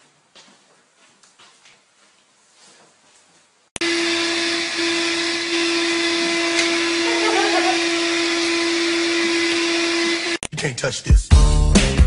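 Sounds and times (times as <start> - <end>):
electric appliance motor running: 3.8 - 10.4.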